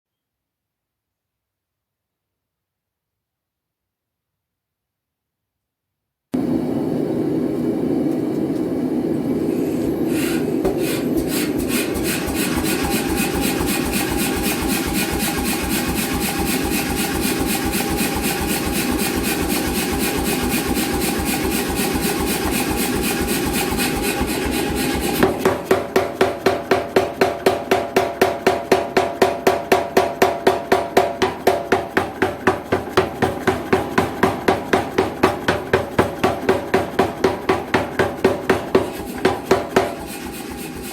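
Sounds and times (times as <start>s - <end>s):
power hammer striking: 9.8s - 40.9s.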